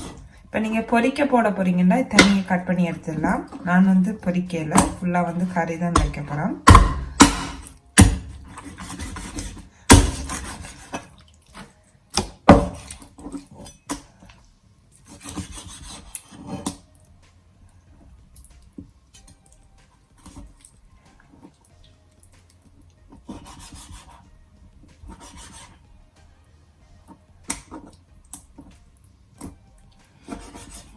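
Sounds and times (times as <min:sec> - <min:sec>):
knife chopping on cutting board: 0:02.1 - 0:03.6, 0:04.7 - 0:11.1, 0:12.2 - 0:13.1, 0:15.1 - 0:16.8, 0:23.2 - 0:24.2, 0:25.0 - 0:25.8, 0:30.2 - 0:30.9
knife cutting through meat: 0:06.0 - 0:11.7, 0:15.0 - 0:16.8, 0:23.2 - 0:24.4, 0:25.0 - 0:25.8, 0:30.1 - 0:30.9.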